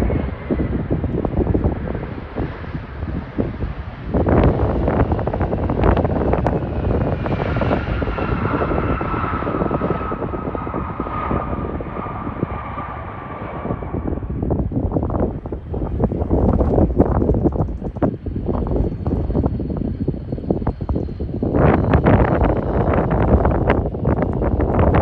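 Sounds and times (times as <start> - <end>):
jet engines roaring with whine: 0.0 - 25.0
wind on microphone: 0.0 - 25.0.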